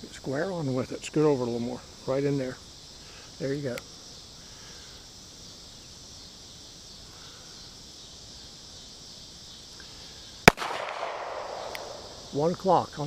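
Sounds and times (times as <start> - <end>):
high-pitched insect chorus: 0.0 - 13.0.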